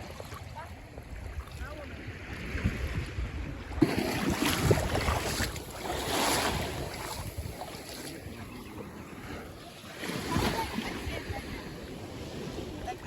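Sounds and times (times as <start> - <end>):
sea water lapping at shore: 0.0 - 13.0
wind buffeting microphone: 0.9 - 9.6.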